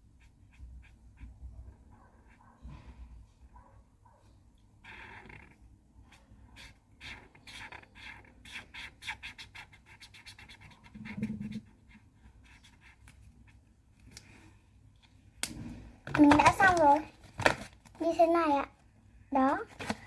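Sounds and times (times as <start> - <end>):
pencil scribbling on paper: 0.0 - 2.6, 4.8 - 13.6.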